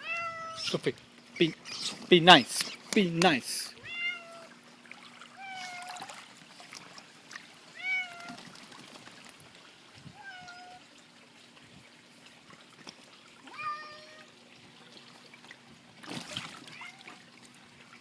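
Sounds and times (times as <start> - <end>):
cat meowing: 0.0 - 0.8, 3.8 - 4.5, 13.5 - 14.2.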